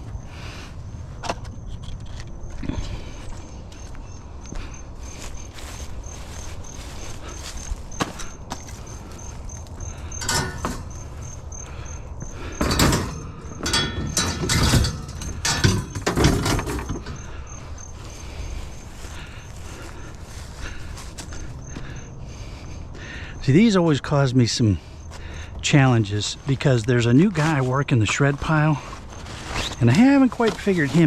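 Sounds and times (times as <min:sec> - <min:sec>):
insect chirping: 0:00.0 - 0:31.0
objects clattering and knocking: 0:07.4 - 0:11.4, 0:12.2 - 0:17.6.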